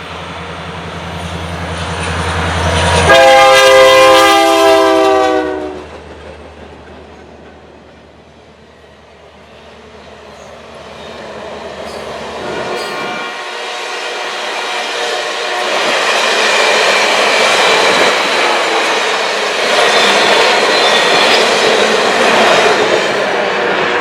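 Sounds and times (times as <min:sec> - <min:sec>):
diesel locomotive rumble: 0:00.0 - 0:13.6
train horn chord: 0:02.9 - 0:05.9, 0:12.7 - 0:15.7.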